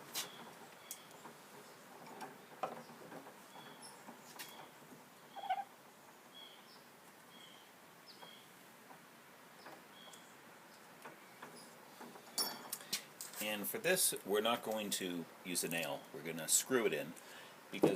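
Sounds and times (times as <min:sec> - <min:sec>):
small bird chirping: 0:02.8 - 0:05.7, 0:06.3 - 0:08.6, 0:09.6 - 0:11.7.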